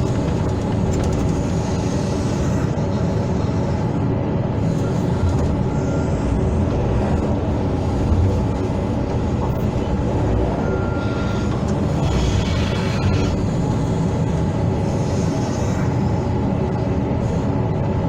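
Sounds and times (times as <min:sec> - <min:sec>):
excavator diesel engine running: 0:00.0 - 0:18.0
hydraulics working: 0:00.0 - 0:18.0.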